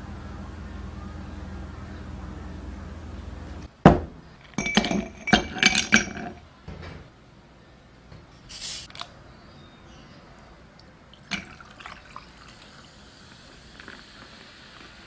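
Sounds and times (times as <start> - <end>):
sharp knock: 3.9 - 4.3
dishes clinking: 3.9 - 7.1, 11.2 - 12.2.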